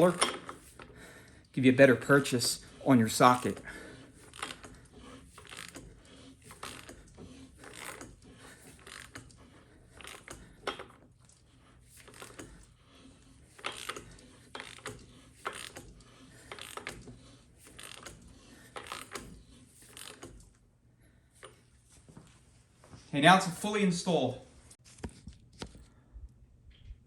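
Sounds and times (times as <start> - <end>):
ratchet clicking: 2.4 - 20.6.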